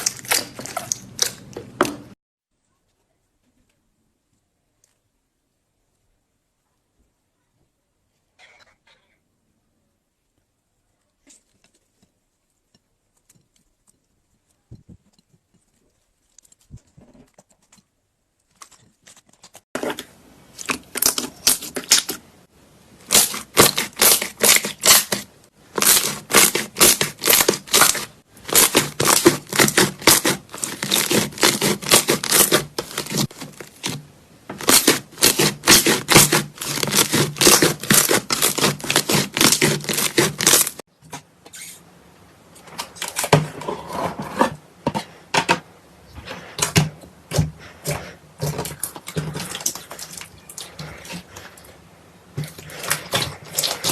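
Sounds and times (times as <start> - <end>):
slime squeezed by hand: 23.1 - 34.0.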